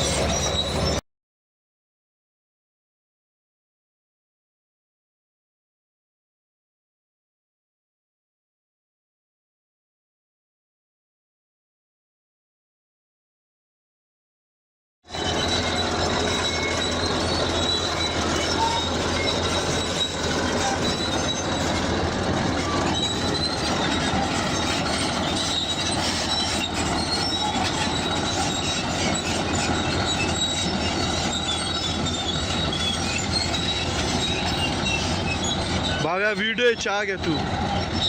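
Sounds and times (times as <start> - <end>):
bulldozer engine running: 0.0 - 1.0, 15.1 - 38.0
crawler tracks squealing: 0.0 - 1.0, 15.1 - 38.0.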